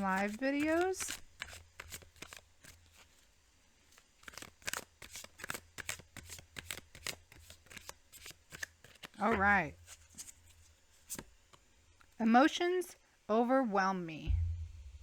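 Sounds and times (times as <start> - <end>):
cards being shuffled: 0.0 - 3.3, 3.9 - 12.1.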